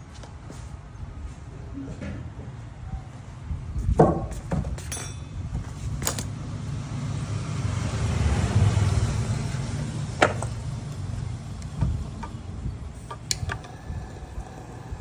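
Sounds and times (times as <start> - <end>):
low engine-like rumble: 5.3 - 15.0
sharp clicks and knocks: 11.6 - 15.0.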